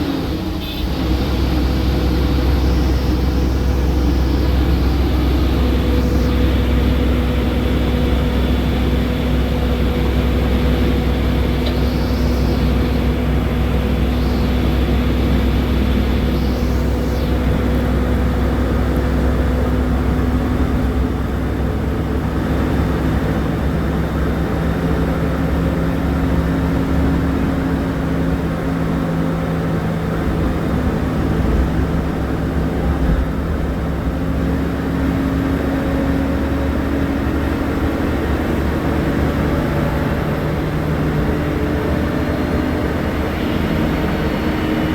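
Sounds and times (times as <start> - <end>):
diesel bus engine rumbling: 0.0 - 44.9
road noise: 0.0 - 44.9.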